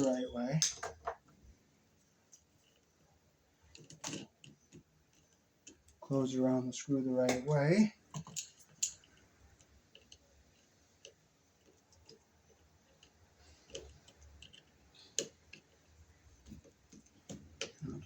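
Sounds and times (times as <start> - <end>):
hand tools clicking on wire: 8.1 - 18.0.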